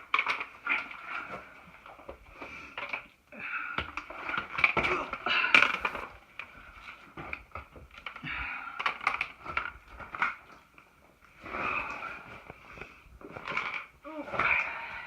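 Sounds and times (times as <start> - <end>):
person breathing hard: 14.1 - 15.0.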